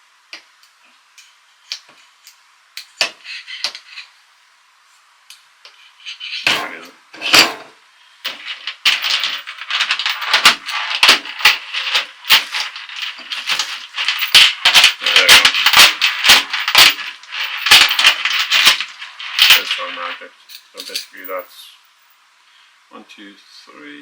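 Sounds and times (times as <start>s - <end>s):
metal screws rattling: 8.3s - 21.2s.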